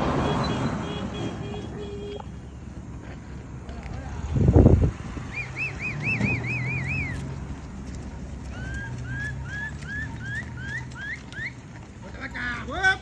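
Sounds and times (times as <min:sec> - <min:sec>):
person whistling to cattle: 0:05.3 - 0:07.2, 0:08.6 - 0:11.6.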